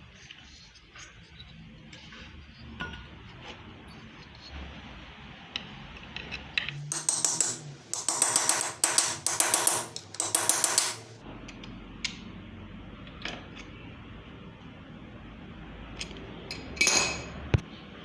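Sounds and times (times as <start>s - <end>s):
rapid metallic clicking of hand tools: 6.9s - 11.2s.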